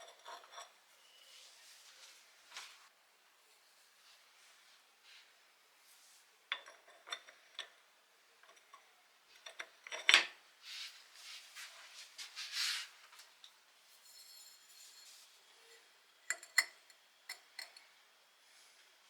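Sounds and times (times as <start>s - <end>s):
metal rubbing on metal: 14.0s - 15.9s.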